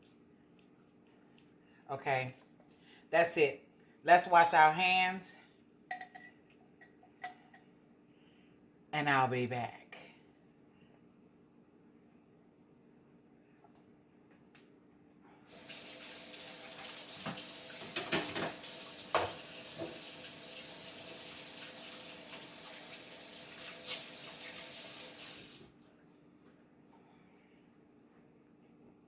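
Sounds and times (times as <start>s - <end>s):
tap water running: 15.5s - 26.6s
knocks and clatters at sink: 17.1s - 20.0s.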